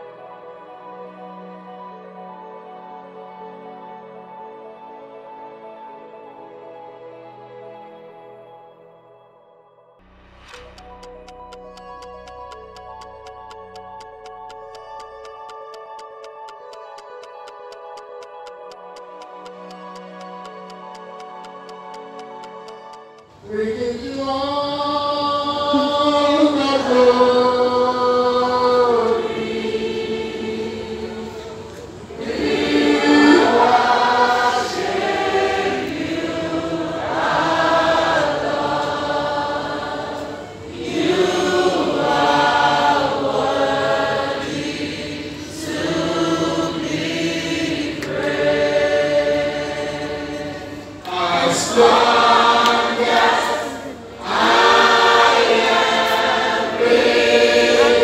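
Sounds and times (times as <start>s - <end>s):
choir singing gospel song: 23.5s - 58.0s.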